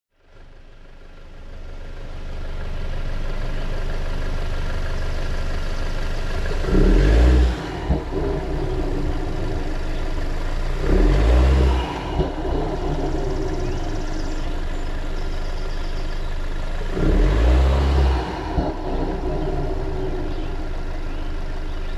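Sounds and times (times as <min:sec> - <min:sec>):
car engine running: 0:00.1 - 0:21.9
loud grinding noise: 0:06.3 - 0:15.3, 0:16.7 - 0:21.1.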